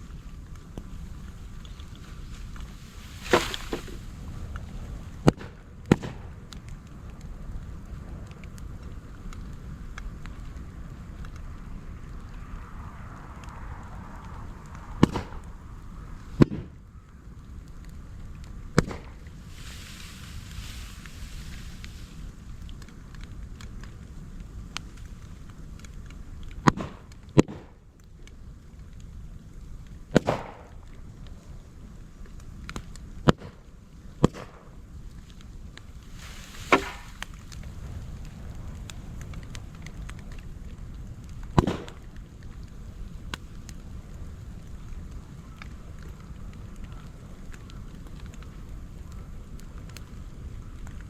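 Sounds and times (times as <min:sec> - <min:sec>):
steady low fire rumble: 0:00.0 - 0:51.0
bamboo bursting with sharp bangs: 0:02.4 - 0:04.3, 0:05.2 - 0:06.3, 0:15.0 - 0:15.4, 0:18.8 - 0:22.3, 0:26.6 - 0:27.8, 0:30.1 - 0:30.8, 0:34.2 - 0:34.7, 0:36.0 - 0:37.5, 0:41.5 - 0:42.1.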